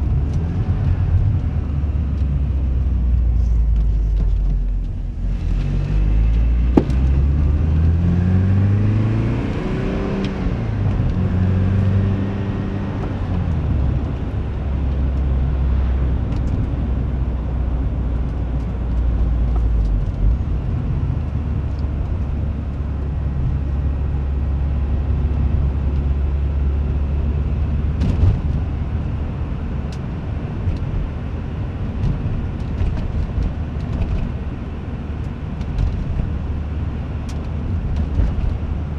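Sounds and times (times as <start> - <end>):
car engine revving: 4.4 - 16.6
sharp suspension knock: 6.8 - 7.1.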